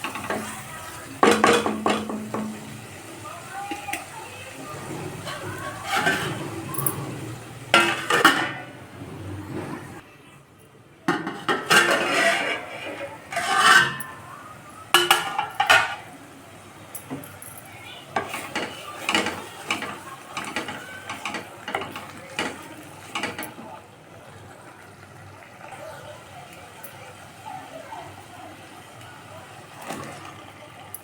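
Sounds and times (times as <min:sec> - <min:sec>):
metal spoon scraping a pan: 0:00.0 - 0:02.8, 0:04.7 - 0:10.0, 0:11.1 - 0:14.4, 0:15.0 - 0:16.1, 0:18.2 - 0:23.6.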